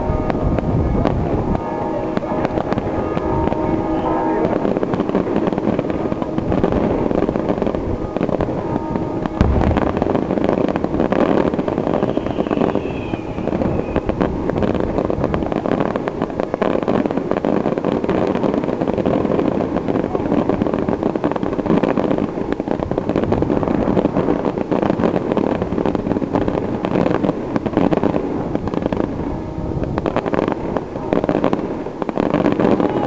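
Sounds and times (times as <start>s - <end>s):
firework whistle: 0.0s - 21.4s, 27.8s - 33.0s
firework shells bursting: 9.3s - 15.9s.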